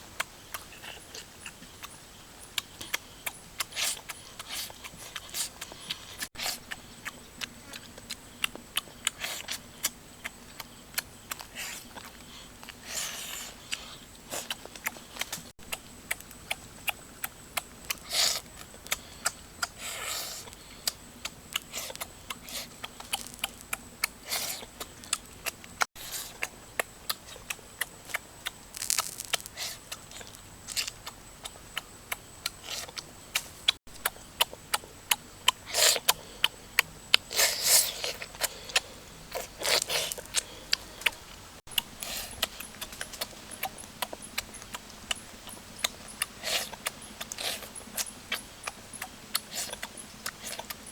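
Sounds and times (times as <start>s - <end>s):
person chewing and lip smacking: 2.6s - 50.8s
slurping: 28.7s - 31.0s, 37.3s - 41.3s.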